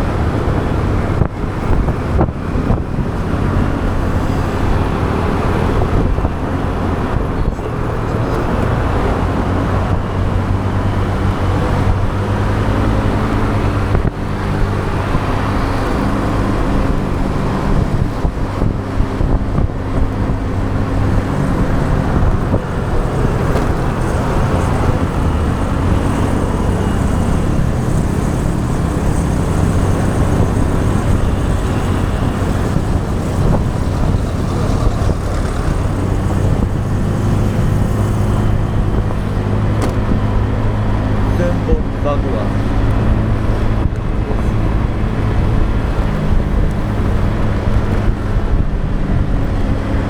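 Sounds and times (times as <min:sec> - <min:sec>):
motorbike engine running: 0:00.0 - 0:50.0
road and wind noise: 0:00.0 - 0:50.0.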